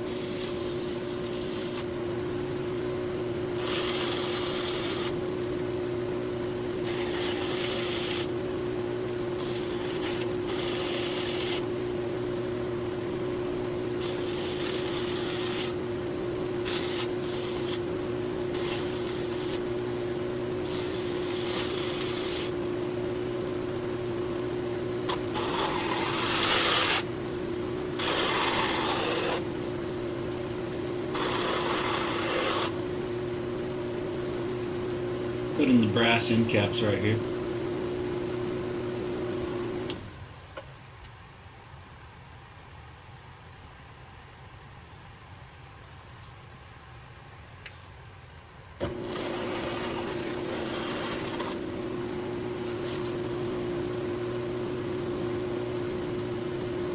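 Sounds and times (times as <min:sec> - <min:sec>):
grinding hiss: 0:00.0 - 0:01.9, 0:03.5 - 0:05.2, 0:06.7 - 0:08.4, 0:09.2 - 0:11.7, 0:13.6 - 0:15.8, 0:16.5 - 0:24.0, 0:24.7 - 0:33.1
electric motor humming: 0:00.0 - 0:40.1, 0:48.8 - 0:56.9.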